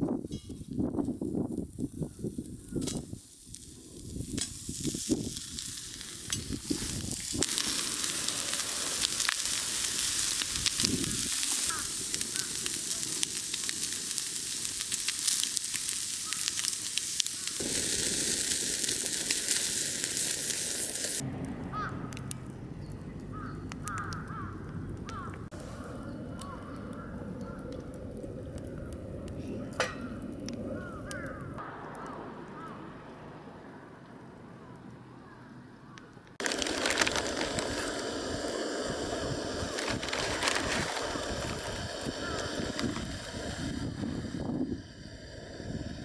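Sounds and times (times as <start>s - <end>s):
crows calling faintly: 2.0s - 2.9s, 11.6s - 12.8s, 16.2s - 16.7s, 21.7s - 22.3s, 23.2s - 33.1s, 34.7s - 36.2s, 42.0s - 42.8s
food sizzling in a pan: 2.1s - 21.2s, 36.4s - 46.0s.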